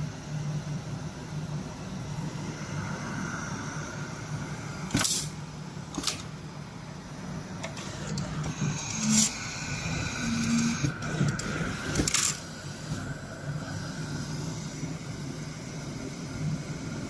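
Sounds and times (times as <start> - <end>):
sharp machine bursts: 8.5 - 12.5.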